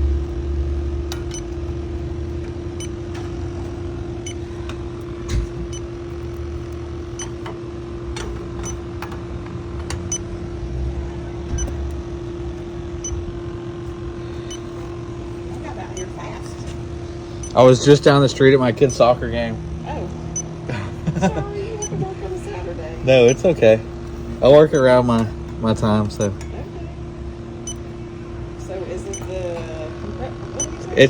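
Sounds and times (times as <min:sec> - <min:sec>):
leak detector ticking: 0:00.0 - 0:07.7, 0:10.0 - 0:10.4, 0:11.5 - 0:16.6, 0:17.3 - 0:18.1, 0:20.3 - 0:20.6, 0:23.1 - 0:23.7, 0:24.4 - 0:26.4, 0:27.6 - 0:27.9, 0:30.5 - 0:31.0
steady low hum: 0:00.0 - 0:31.0.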